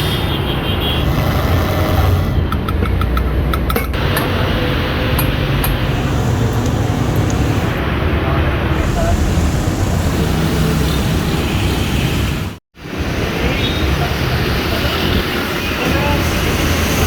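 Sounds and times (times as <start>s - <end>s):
engine running with low rumble: 4.0s - 8.0s, 8.7s - 11.3s.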